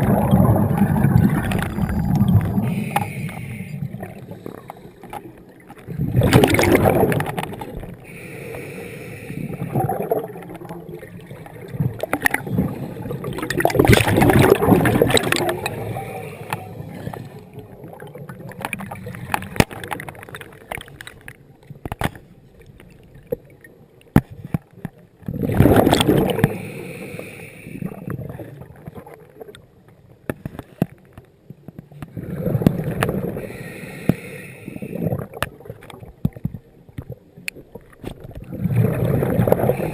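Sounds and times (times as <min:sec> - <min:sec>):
gurgling exhaled bubbles: 0:00.0 - 0:08.3, 0:09.3 - 0:20.5, 0:25.3 - 0:26.8, 0:32.1 - 0:33.6, 0:38.2 - 0:39.9
breathing through regulator: 0:01.3 - 0:05.2, 0:08.0 - 0:09.9, 0:15.6 - 0:17.5, 0:26.3 - 0:28.0, 0:33.4 - 0:35.1.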